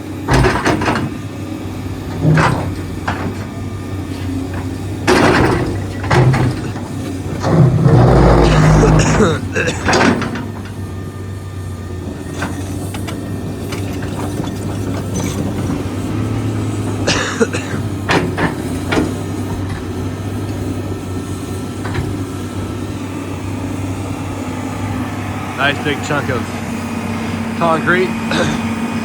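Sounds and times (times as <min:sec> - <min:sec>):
excavator diesel engine under load: 0:00.0 - 0:29.0
bucket clanking on concrete: 0:00.3 - 0:01.3, 0:01.9 - 0:11.0, 0:12.0 - 0:22.6.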